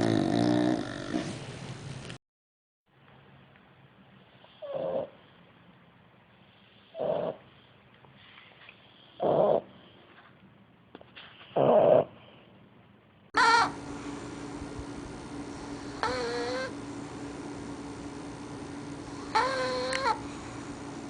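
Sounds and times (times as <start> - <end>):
dog snoring: 0.0 - 1.4, 4.6 - 5.1, 6.9 - 7.4, 9.2 - 9.9, 11.6 - 12.1, 15.5 - 16.8, 19.0 - 20.5
steady low hum: 13.4 - 21.0.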